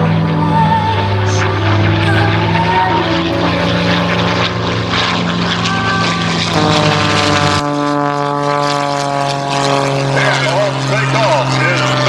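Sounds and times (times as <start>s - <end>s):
propeller airplane engine droning: 0.0s - 12.0s.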